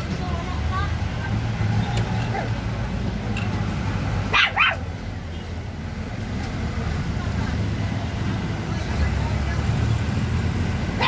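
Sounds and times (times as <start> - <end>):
dog barking: 4.3 - 4.9.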